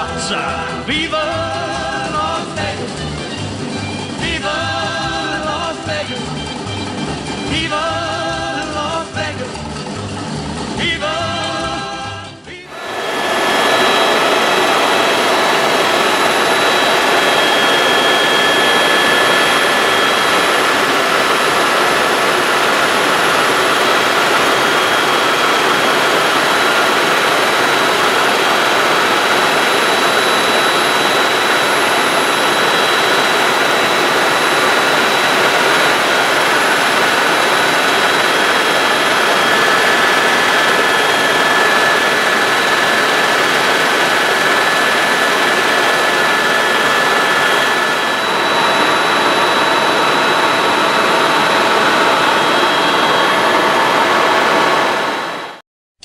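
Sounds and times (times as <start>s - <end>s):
helicopter rotor and turbine rush: 3.1s - 5.2s, 12.7s - 55.6s
thin high whines: 12.7s - 55.4s.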